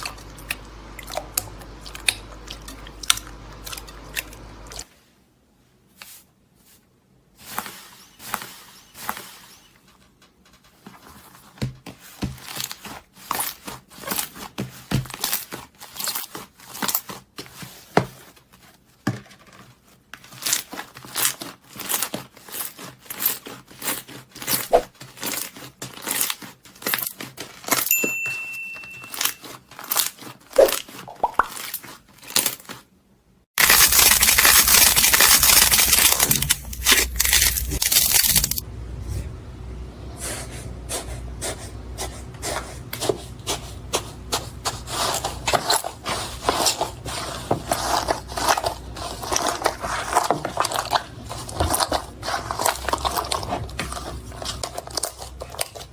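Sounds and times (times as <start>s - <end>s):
slime crackling and popping: 33.6s - 38.6s.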